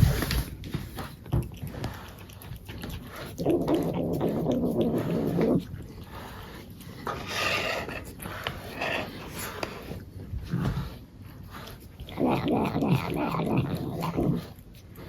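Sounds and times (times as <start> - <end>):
cat making low vocal noise: 12.0 - 14.6.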